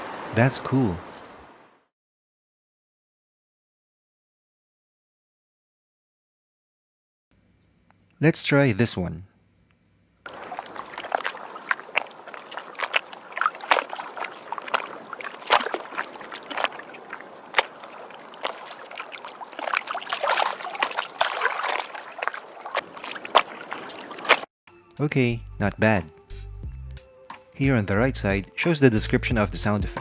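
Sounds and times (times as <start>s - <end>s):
water sloshing and splashing: 10.3s - 24.5s.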